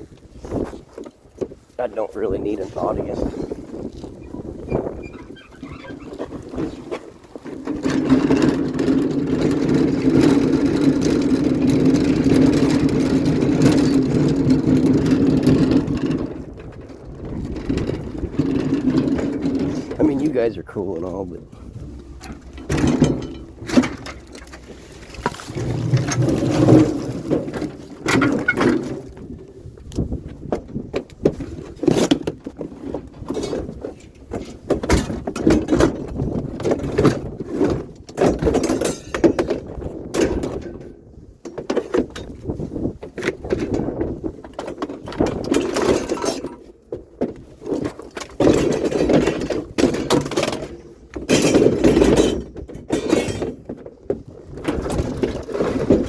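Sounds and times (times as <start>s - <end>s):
scrap metal clanking: 4.4s - 29.1s, 47.6s - 56.0s.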